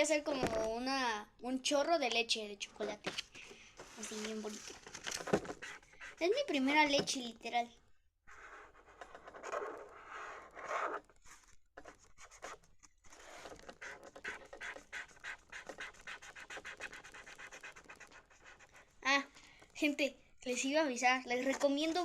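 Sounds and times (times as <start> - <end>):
colouring scratching on paper: 3.8 - 6.7, 8.3 - 19.1, 20.5 - 22.0.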